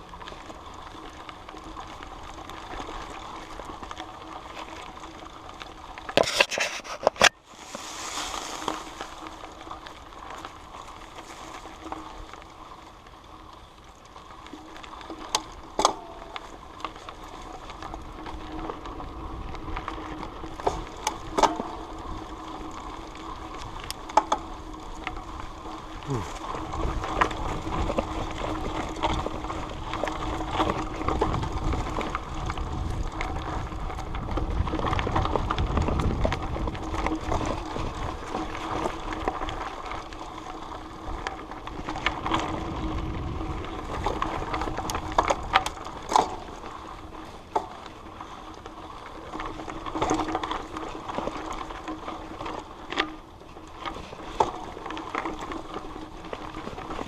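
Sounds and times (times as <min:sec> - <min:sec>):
riding rumble: 0:00.0 - 0:57.0
camera rattling: 0:06.1 - 0:07.4.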